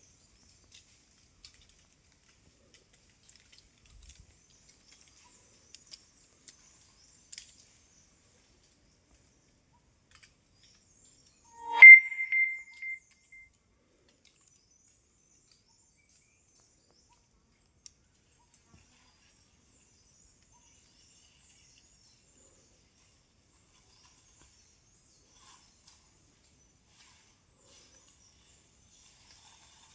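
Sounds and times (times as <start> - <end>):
faint high-pitched chirping: 11.3 - 13.4
loud ringing tone: 11.6 - 13.0.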